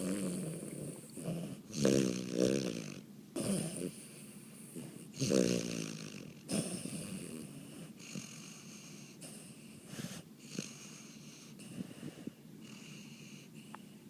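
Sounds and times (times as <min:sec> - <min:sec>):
person snoring: 0:00.0 - 0:04.1, 0:04.7 - 0:09.2
snorts and snuffles: 0:00.0 - 0:13.8.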